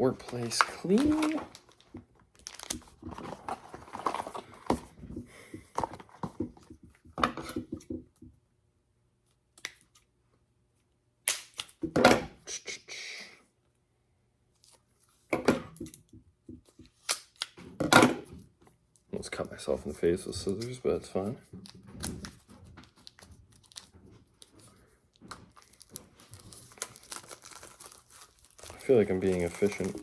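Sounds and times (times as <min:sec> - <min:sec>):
packaging clicks and rustles: 0:00.2 - 0:04.8, 0:21.6 - 0:30.0
scissors cutting packaging: 0:25.5 - 0:30.0.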